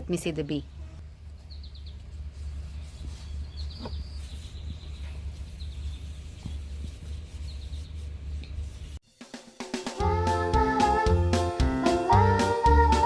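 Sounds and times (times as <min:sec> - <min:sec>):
small bird chirping: 0:00.6 - 0:08.6.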